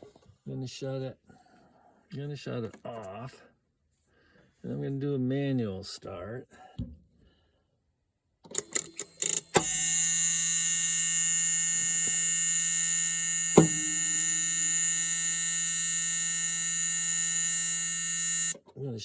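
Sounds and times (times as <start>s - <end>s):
generator clicks: 8.5s - 10.1s
loud electrical buzz: 9.5s - 18.6s.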